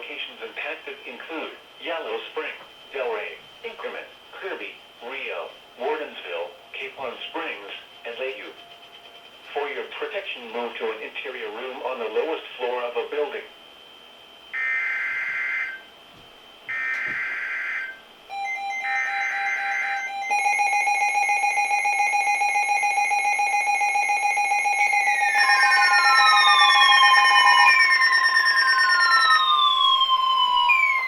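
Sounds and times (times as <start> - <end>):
multi-tone attention signal: 17.6 - 31.0
falling siren-like sweeps: 22.2 - 31.0
screeching data bursts: 23.7 - 31.0.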